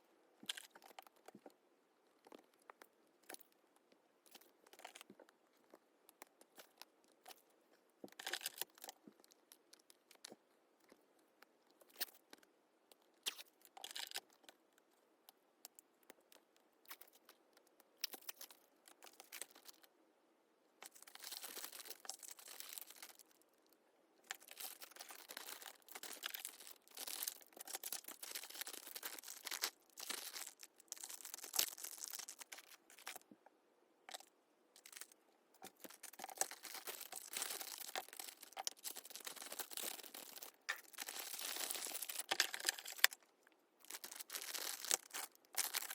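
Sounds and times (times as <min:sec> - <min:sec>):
plastic and paper crinkling: 0:20.8 - 0:23.4, 0:24.3 - 0:33.3, 0:34.1 - 0:45.9.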